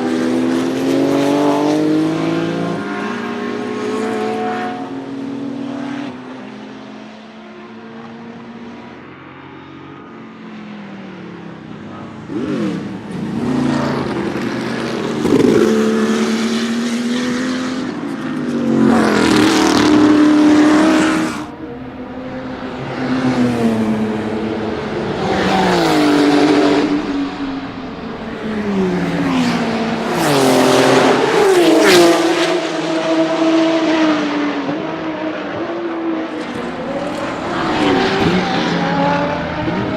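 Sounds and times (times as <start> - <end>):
race car engine at full throttle: 0.0 - 39.9.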